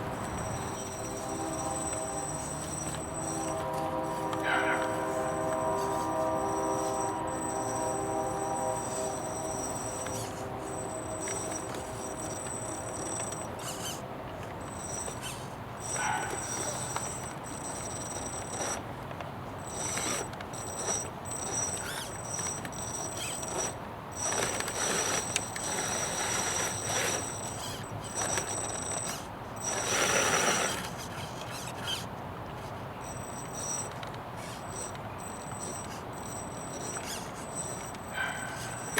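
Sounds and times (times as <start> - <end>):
rc crawler tyres scraping: 0.0 - 38.9
high insect chirring: 0.2 - 14.0, 14.6 - 18.8, 19.6 - 30.7, 33.0 - 38.9.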